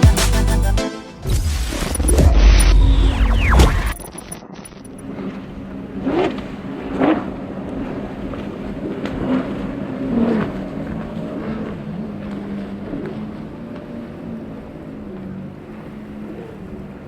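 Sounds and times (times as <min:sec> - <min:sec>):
outboard engine revving: 0:05.0 - 0:17.0.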